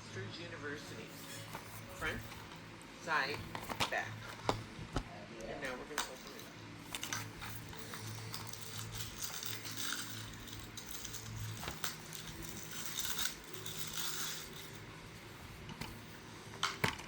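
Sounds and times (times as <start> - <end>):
plastic case rustling and scraping: 1.1 - 2.7, 3.3 - 5.1.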